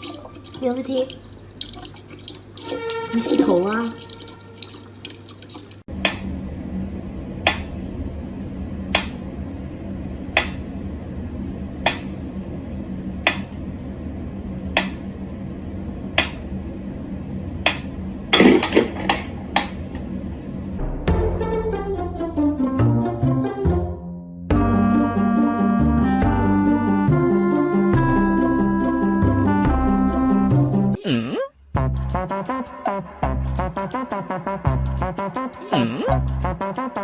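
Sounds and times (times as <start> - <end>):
water dripping: 0.0 - 5.9
low hum: 5.8 - 22.3.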